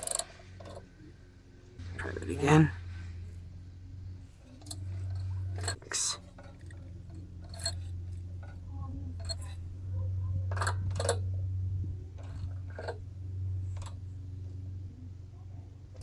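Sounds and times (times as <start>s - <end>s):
hand tools clicking on metal: 0.0s - 0.9s, 4.4s - 9.8s, 10.4s - 11.5s
steady low hum: 0.0s - 16.0s.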